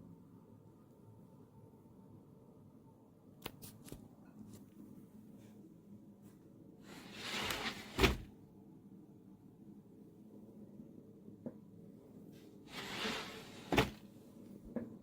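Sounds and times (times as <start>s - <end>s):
sliding rub: 6.9s - 8.2s, 12.7s - 14.0s.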